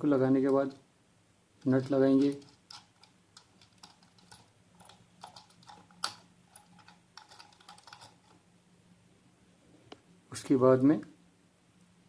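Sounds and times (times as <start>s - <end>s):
small hardware clicking and clinking: 1.6s - 8.4s.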